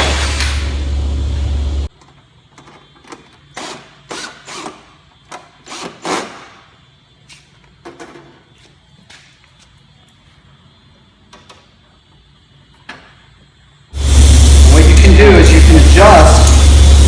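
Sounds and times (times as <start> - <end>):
power drill running: 14.0 - 17.0.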